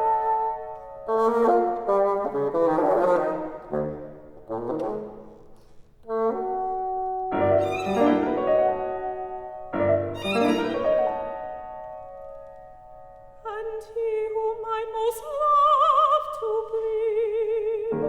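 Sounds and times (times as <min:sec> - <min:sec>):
bassoon: 0:00.0 - 0:05.4, 0:06.0 - 0:11.8
piano: 0:00.0 - 0:18.0
violin: 0:07.2 - 0:15.2.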